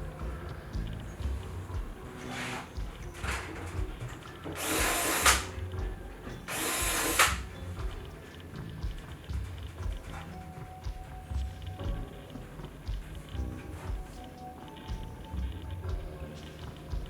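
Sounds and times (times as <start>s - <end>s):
drill whirring: 0.0s - 10.4s.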